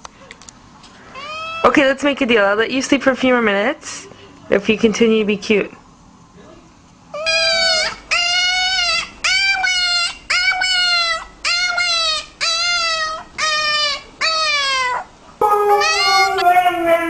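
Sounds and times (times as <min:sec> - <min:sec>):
pet animal whining cries: 0:07.1 - 0:17.0.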